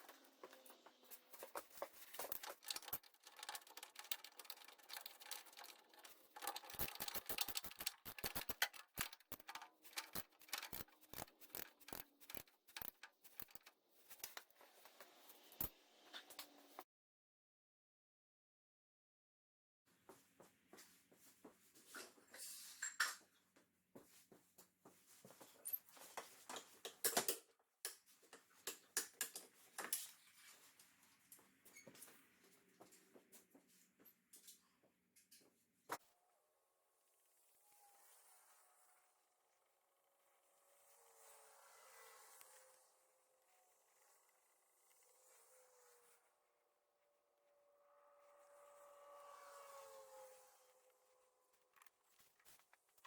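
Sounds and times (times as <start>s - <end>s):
tools clicking and knocking: 0.0s - 15.7s, 26.5s - 30.2s.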